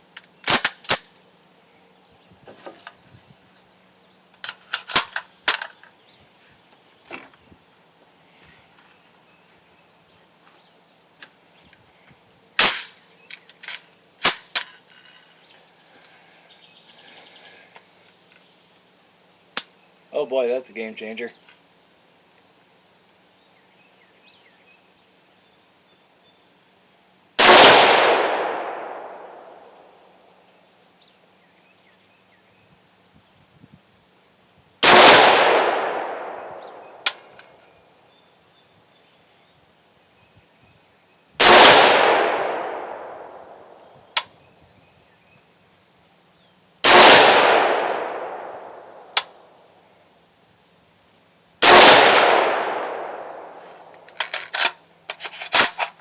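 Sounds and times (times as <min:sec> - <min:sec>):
rifle shots echoing: 0:27.4 - 0:29.8, 0:34.8 - 0:37.3, 0:41.4 - 0:43.8, 0:46.8 - 0:49.4, 0:51.6 - 0:53.9.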